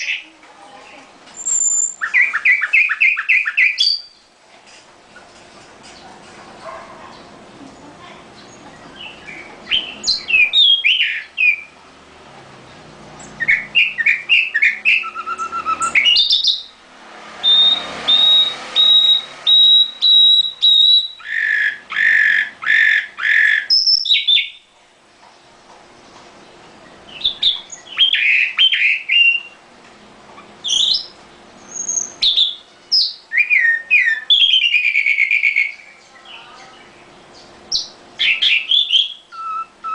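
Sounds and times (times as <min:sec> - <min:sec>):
nightingale singing: 0:00.0 - 0:04.3, 0:08.4 - 0:11.8, 0:12.7 - 0:16.8, 0:17.4 - 0:24.7, 0:26.8 - 0:29.6, 0:30.4 - 0:39.9.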